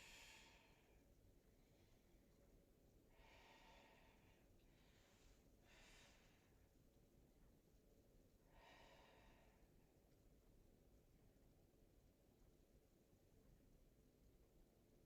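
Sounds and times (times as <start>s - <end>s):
person breathing softly: 0.0s - 2.3s, 3.1s - 6.7s, 8.4s - 9.9s.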